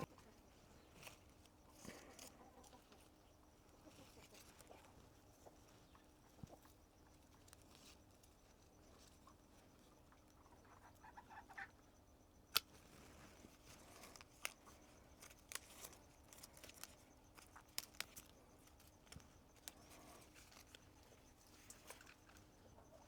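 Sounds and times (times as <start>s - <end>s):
pruning shears snipping stems: 13.6s - 20.8s.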